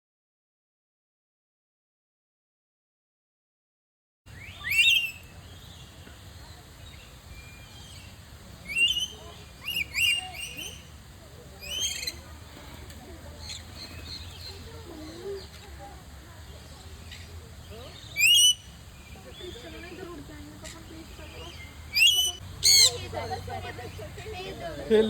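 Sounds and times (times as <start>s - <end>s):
caged birds shrill calls: 4.3s - 24.2s.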